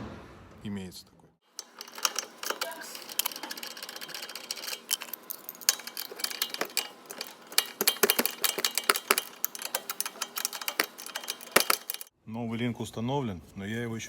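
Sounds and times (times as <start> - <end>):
hand tools clinking on metal: 1.5 - 12.1.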